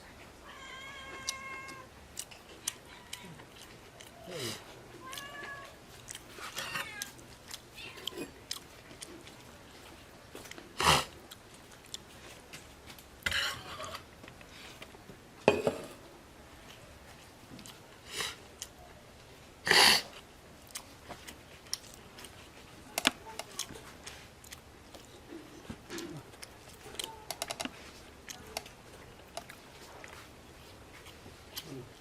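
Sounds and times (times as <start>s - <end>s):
chewing and mouth noises: 1.0s - 15.0s, 16.5s - 32.0s
plate clattering: 15.4s - 16.0s.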